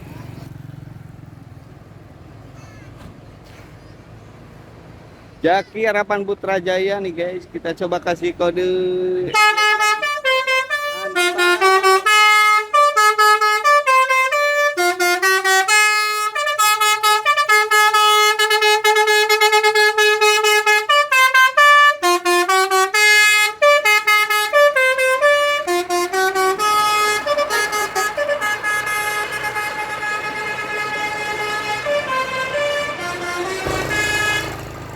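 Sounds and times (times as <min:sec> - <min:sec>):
multi-tone air horn tune: 0:09.3 - 0:34.9
noisy rumble: 0:23.8 - 0:34.9.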